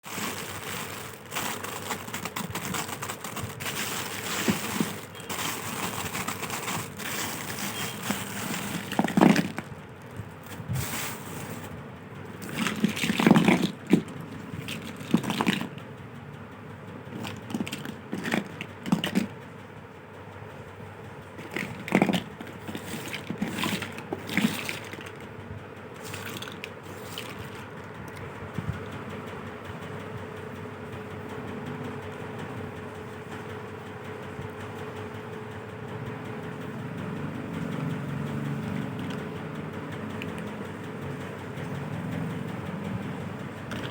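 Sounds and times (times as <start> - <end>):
plastic packaging crinkling: 0.0 - 11.8, 12.4 - 15.7, 21.4 - 25.3, 26.0 - 27.7.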